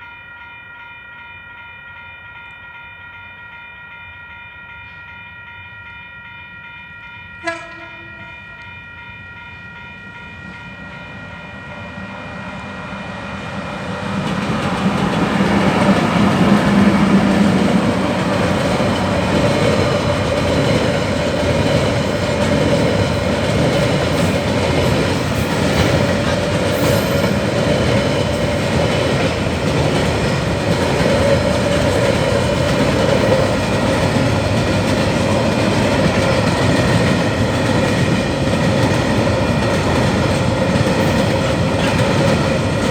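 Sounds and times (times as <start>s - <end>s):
train horn: 7.4s - 8.7s
train rumble: 9.4s - 42.9s
wheels clattering on rails: 13.1s - 42.9s.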